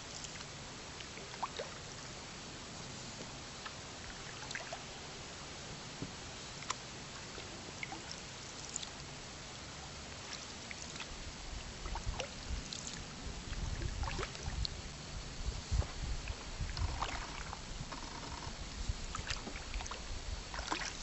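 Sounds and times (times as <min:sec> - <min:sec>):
water trickling and dripping: 0:00.0 - 0:02.1, 0:03.6 - 0:04.9, 0:06.6 - 0:14.8, 0:15.8 - 0:17.6, 0:18.6 - 0:21.0.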